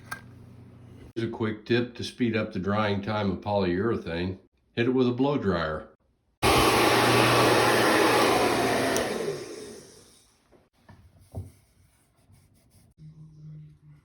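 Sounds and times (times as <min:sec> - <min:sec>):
blow dryer running: 0:06.4 - 0:10.2.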